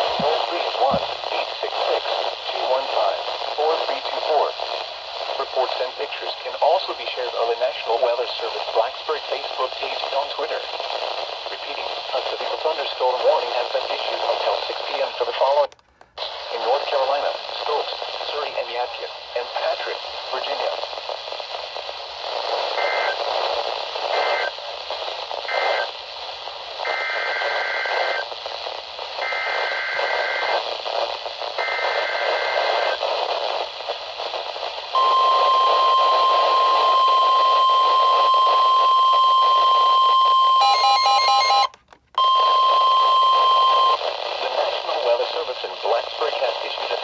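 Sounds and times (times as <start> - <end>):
radio static hiss: 0.0 - 47.0
data bursts: 35.0 - 44.0
steady warning alarm tone: 35.0 - 44.0.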